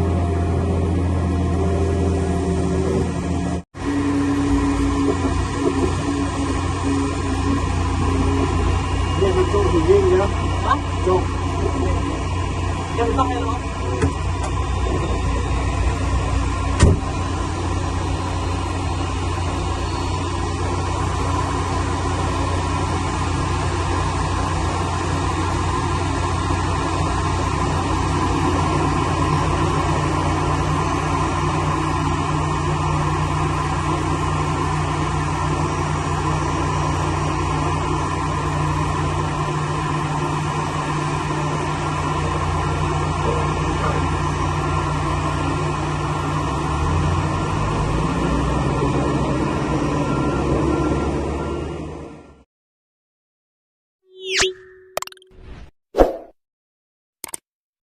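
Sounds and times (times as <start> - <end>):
airliner engine drone: 0.0 - 52.4
low hum: 54.1 - 56.3
sharp click: 57.2 - 57.4.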